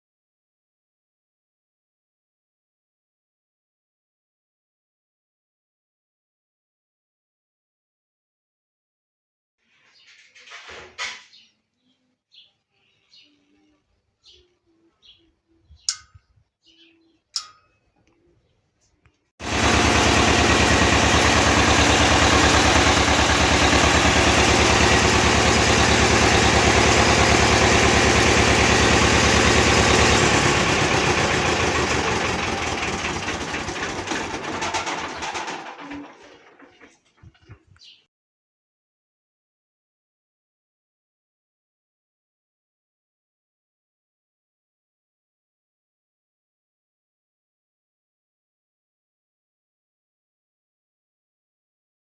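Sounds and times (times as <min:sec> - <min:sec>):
motor running and winding down: 0:19.4 - 0:34.8.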